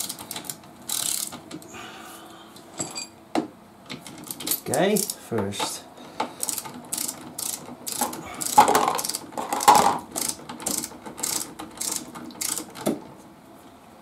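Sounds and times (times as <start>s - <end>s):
ratchet wrench clicking: 0.0s - 1.4s, 6.4s - 12.7s.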